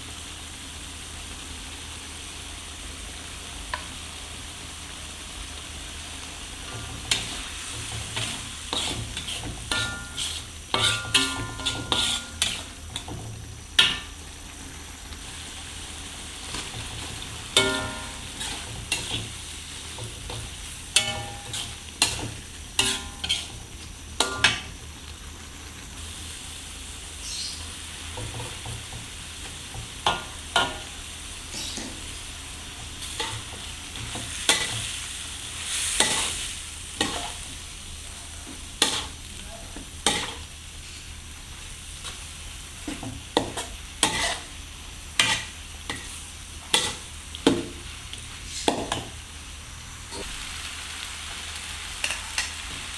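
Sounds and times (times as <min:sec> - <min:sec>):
noodles sizzling in pan: 0:00.0 - 0:52.9
spatula scraping pan: 0:06.7 - 0:13.2, 0:16.4 - 0:24.7, 0:32.9 - 0:37.6, 0:40.0 - 0:41.1, 0:42.9 - 0:44.6, 0:45.2 - 0:47.6.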